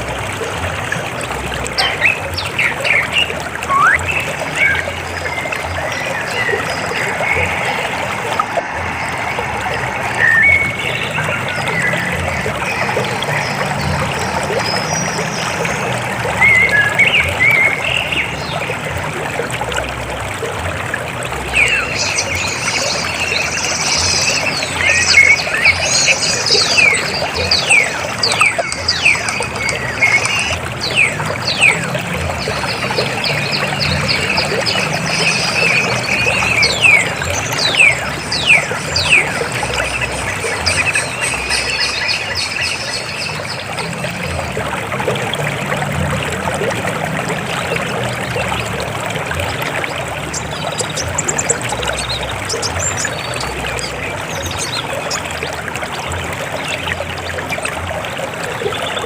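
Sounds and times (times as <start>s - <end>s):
river water flowing over rocks: 0.0s - 59.0s
bird whistling calls: 2.9s - 4.9s.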